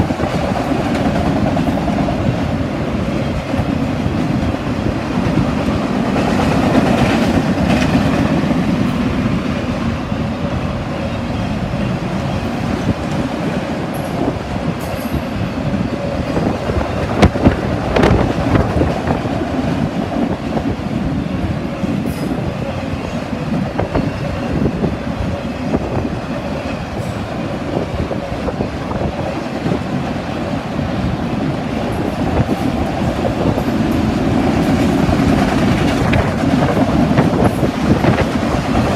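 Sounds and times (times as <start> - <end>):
train cars clanking: 0.0 - 38.9
train wheels rumbling on rail: 0.0 - 38.9
clicking over rail joints: 32.0 - 38.9.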